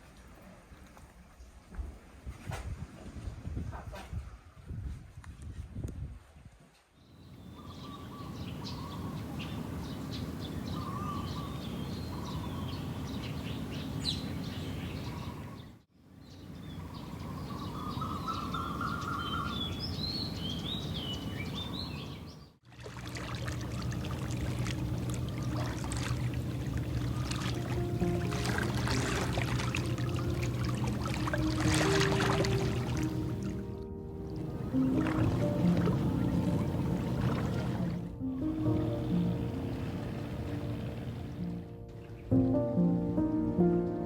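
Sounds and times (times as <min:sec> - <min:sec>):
birds chirping and singing: 0:07.4 - 0:22.5
low steady hum: 0:22.7 - 0:44.0
outdoor background hiss: 0:32.2 - 0:44.0.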